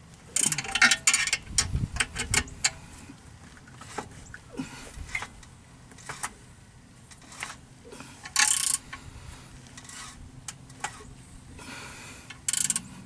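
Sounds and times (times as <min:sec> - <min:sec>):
metal clicks and scraping: 0:00.1 - 0:02.8, 0:05.0 - 0:06.4, 0:07.1 - 0:07.6, 0:08.2 - 0:09.0, 0:09.6 - 0:11.1, 0:12.3 - 0:12.9.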